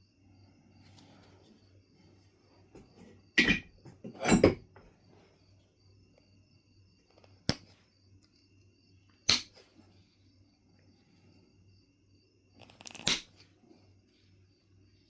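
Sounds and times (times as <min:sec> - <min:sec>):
stone knapping clicks: 0:12.6 - 0:13.3.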